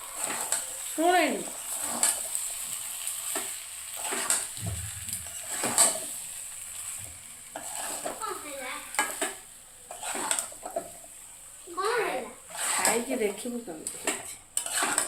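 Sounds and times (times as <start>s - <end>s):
curry sizzling in a pan: 0.0s - 15.0s
spatula scraping and knocking pan: 0.1s - 0.7s, 1.7s - 2.7s, 3.3s - 6.2s, 7.0s - 11.0s, 12.4s - 15.0s.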